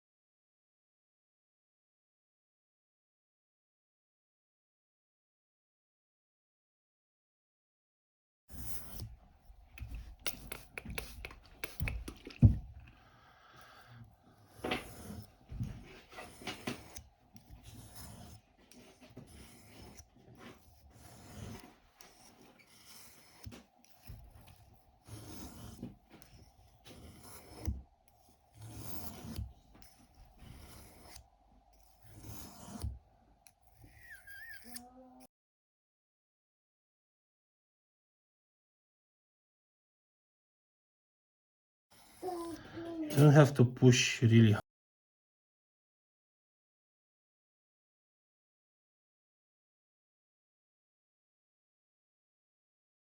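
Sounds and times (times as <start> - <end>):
knife blade scraping on whetstone: 8.5 - 9.1, 14.4 - 33.0, 33.6 - 34.8.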